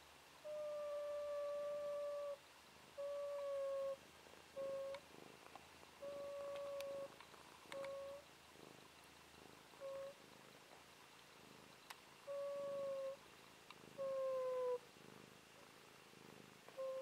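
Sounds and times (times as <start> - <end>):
faint clicks: 4.8 - 8.3, 10.7 - 12.1, 13.6 - 13.8.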